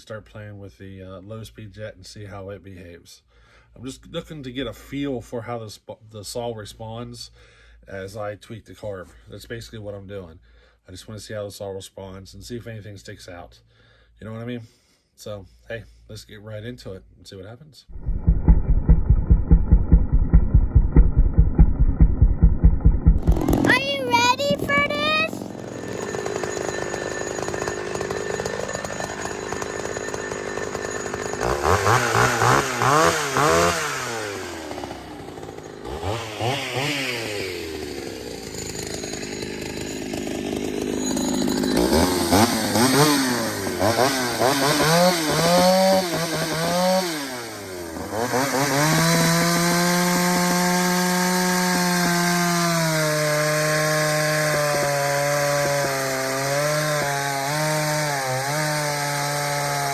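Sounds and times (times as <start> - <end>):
chainsaw revving: 17.9 - 59.9.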